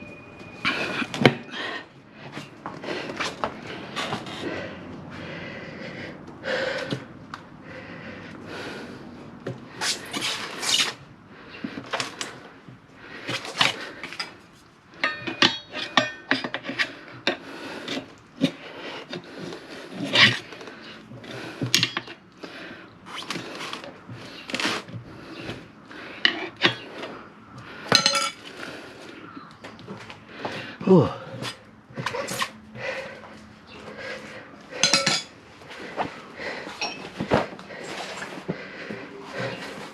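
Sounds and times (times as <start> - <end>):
tire levers clanking on wheel rim: 15.0 - 19.3, 20.0 - 22.2, 27.9 - 28.5, 34.7 - 35.4, 36.7 - 38.4.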